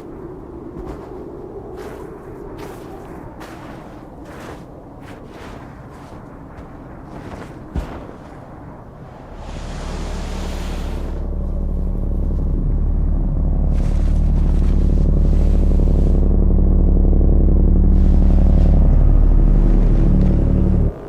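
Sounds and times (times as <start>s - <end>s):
deep bass tone from car audio: 9.4s - 21.0s.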